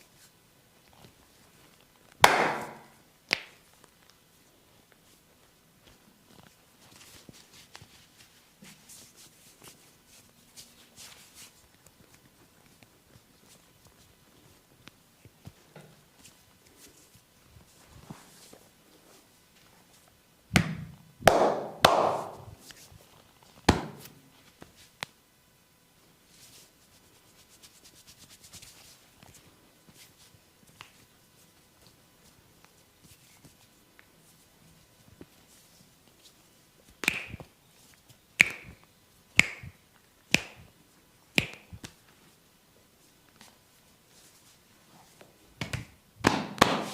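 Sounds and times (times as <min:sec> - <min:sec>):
soft rustle: 0:00.0 - 0:02.2, 0:03.6 - 0:20.3, 0:22.6 - 0:25.3, 0:25.9 - 0:45.6
hands smacking on head: 0:02.2 - 0:03.6, 0:20.6 - 0:22.5, 0:37.0 - 0:37.5, 0:38.4 - 0:38.8, 0:39.4 - 0:40.7, 0:41.4 - 0:42.0, 0:45.6 - 0:46.9.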